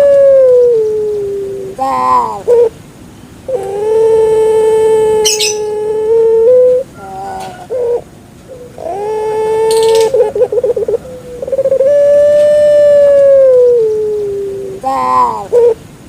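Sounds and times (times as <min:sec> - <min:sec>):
dove cooing: 0:00.0 - 0:02.8, 0:03.5 - 0:15.8.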